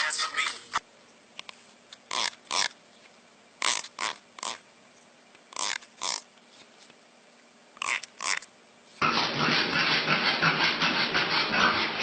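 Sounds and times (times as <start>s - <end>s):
animal huffing: 9.0s - 12.0s.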